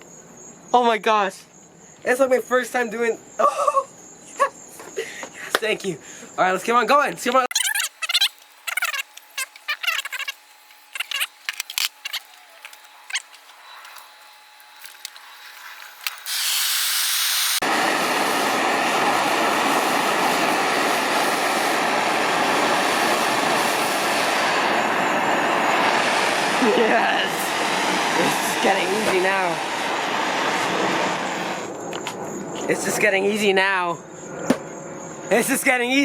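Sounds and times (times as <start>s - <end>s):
torch flame roaring: 7.7s - 31.8s
gas hissing: 7.8s - 31.7s.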